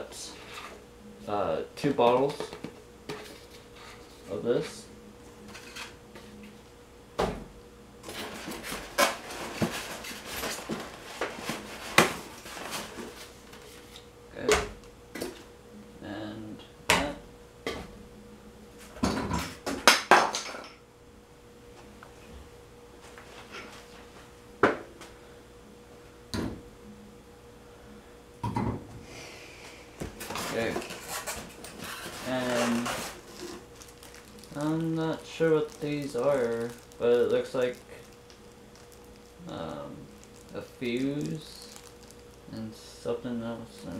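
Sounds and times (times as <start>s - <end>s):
packaging rustling: 8.1s - 14.0s, 30.1s - 42.8s.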